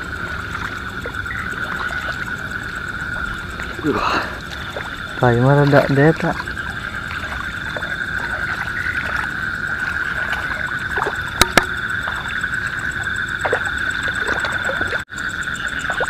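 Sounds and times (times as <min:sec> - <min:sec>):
frogs calling: 0:00.0 - 0:16.0
sharp clicks: 0:11.4 - 0:11.8.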